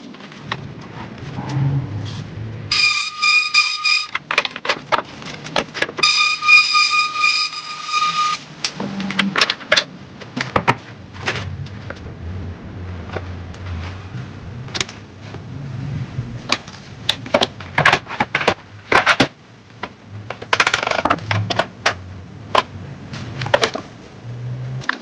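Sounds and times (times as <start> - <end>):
scraping rustle: 0.1 - 2.6, 10.8 - 19.2
wooden pieces clicking and knocking: 16.5 - 22.7.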